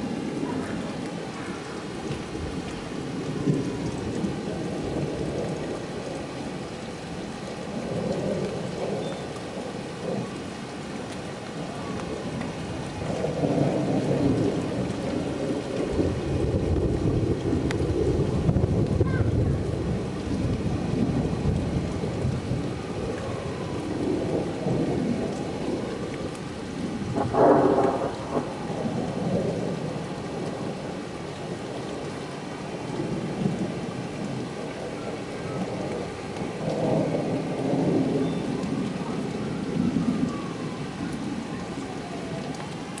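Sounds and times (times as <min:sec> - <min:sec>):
steady rain: 0:00.0 - 0:43.0
rolling thunder: 0:12.1 - 0:32.0, 0:33.0 - 0:42.4.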